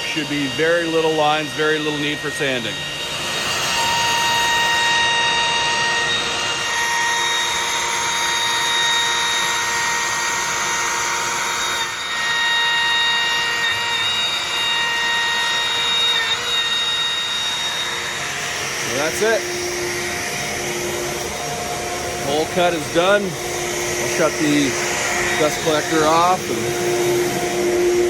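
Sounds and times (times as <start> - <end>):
router spindle cutting wood: 0.0 - 28.0
dust collector rushing: 18.3 - 28.0.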